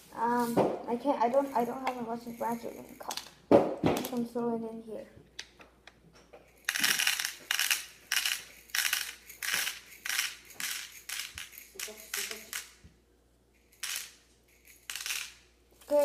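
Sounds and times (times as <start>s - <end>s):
popcorn kernels rattling: 6.6s - 12.8s, 13.7s - 16.0s.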